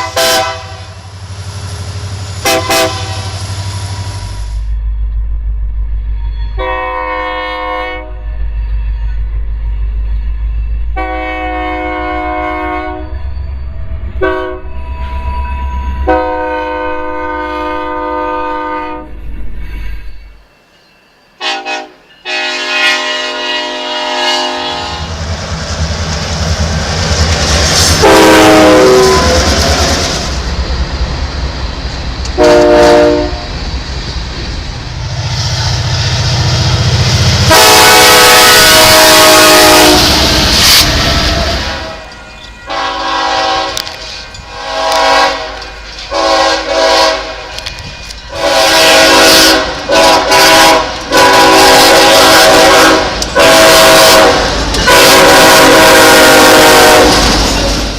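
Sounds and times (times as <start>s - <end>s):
locomotive air horn blasts: 0.0s - 1.0s, 2.4s - 4.1s, 6.6s - 8.2s, 11.0s - 13.1s, 14.2s - 19.1s, 21.4s - 25.2s, 27.9s - 30.2s, 32.4s - 33.5s, 37.4s - 57.4s
train rushing on rails: 0.0s - 57.9s
locomotive rumble: 22.5s - 57.9s.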